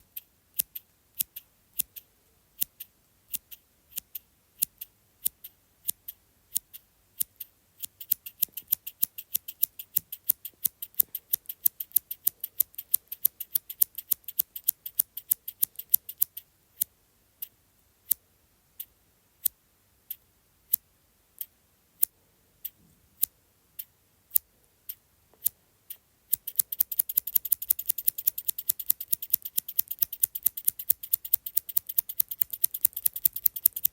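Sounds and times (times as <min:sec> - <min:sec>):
small scissors snipping: 0:00.2 - 0:16.4, 0:25.4 - 0:33.9.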